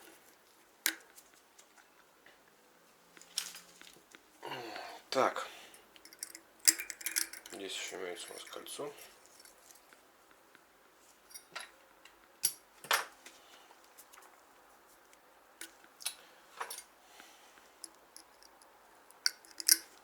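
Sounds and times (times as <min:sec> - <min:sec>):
small metal parts clinking: 0:06.0 - 0:09.8, 0:17.8 - 0:20.0.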